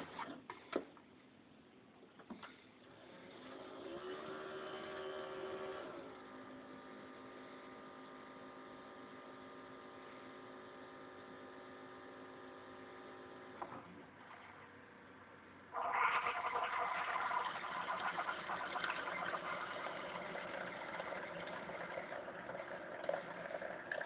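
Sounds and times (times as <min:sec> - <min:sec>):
coffee maker pump humming: 0:03.1 - 0:14.8, 0:15.8 - 0:24.0.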